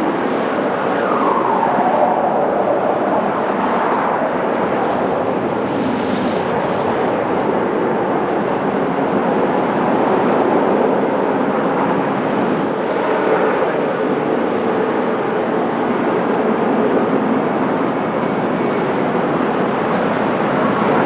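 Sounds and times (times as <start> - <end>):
faint whining tone: 4.5 - 12.7.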